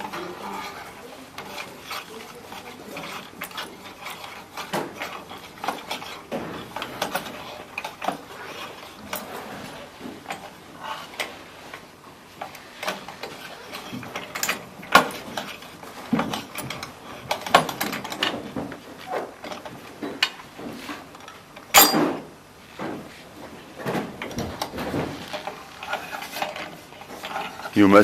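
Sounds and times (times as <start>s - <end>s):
wrench and nut clinking: 21.2s - 22.2s.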